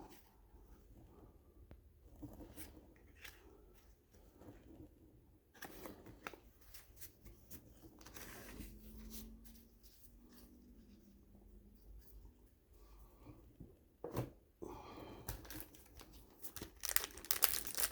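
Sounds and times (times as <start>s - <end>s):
rustling and flicking of cards: 15.3s - 17.9s.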